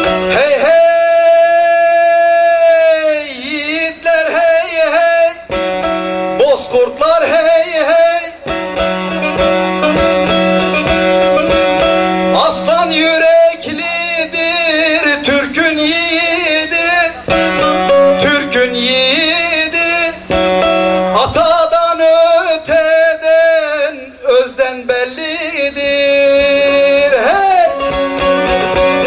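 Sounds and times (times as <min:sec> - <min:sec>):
plucked long-necked lute: 0:00.0 - 0:01.5, 0:04.2 - 0:21.7, 0:26.0 - 0:29.0
man singing ornamented notes: 0:00.0 - 0:29.0.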